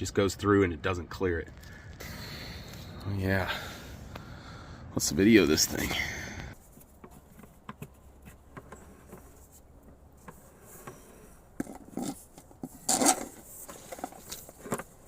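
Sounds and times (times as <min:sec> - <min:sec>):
cable scraping in a drain: 0:10.2 - 0:14.9.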